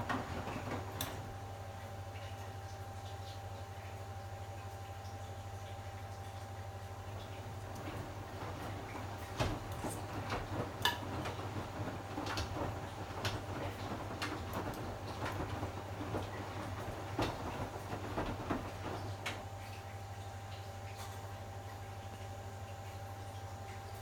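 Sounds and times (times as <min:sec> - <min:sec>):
washing machine clicks and knocks: 0:00.0 - 0:01.4, 0:07.2 - 0:19.6
washing machine motor hum: 0:00.0 - 0:24.0.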